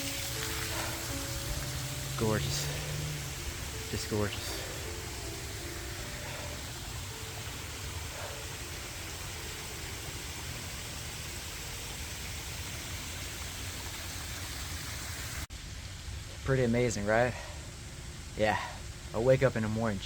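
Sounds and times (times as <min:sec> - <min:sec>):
waterfall rushing: 0:00.0 - 0:15.5.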